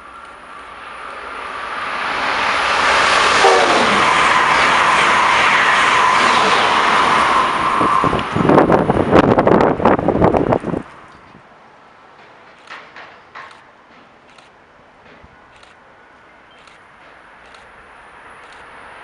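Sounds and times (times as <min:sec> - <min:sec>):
high-speed train passing: 0:00.0 - 0:19.0
wind buffeting microphone: 0:07.4 - 0:11.5.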